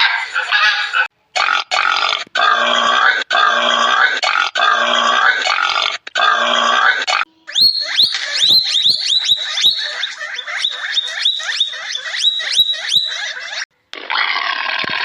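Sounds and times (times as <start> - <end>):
squeaky animal chirps: 5.7 - 13.7.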